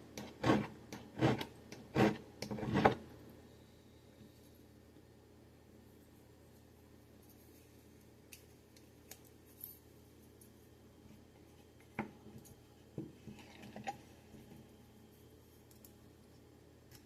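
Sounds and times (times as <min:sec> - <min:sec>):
file scraping metal blade: 0:00.2 - 0:03.0.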